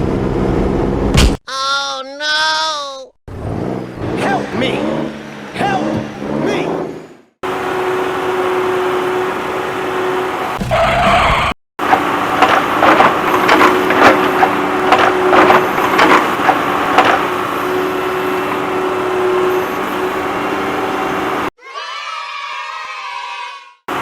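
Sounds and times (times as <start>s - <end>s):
vehicle engine humming: 3.3s - 21.5s
sharp knocks and clatters: 11.8s - 17.4s.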